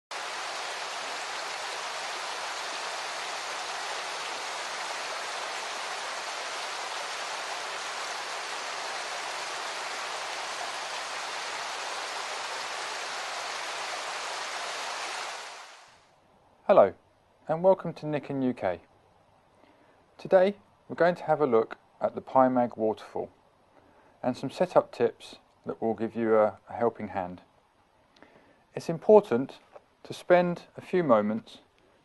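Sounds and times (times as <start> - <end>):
rushing water: 0.1 - 16.0.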